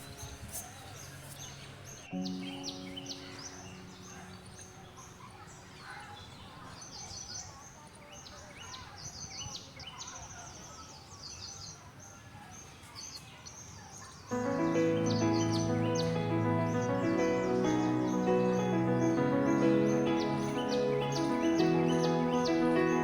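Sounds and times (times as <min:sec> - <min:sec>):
songbirds chirping and trilling: 0:00.0 - 0:23.0
background music: 0:02.0 - 0:05.6, 0:14.3 - 0:23.0.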